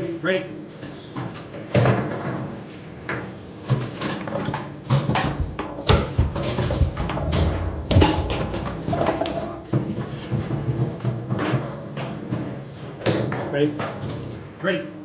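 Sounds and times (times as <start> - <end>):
foosball ball cracking: 3.8 - 10.8
foosball rods clacking: 3.8 - 14.2.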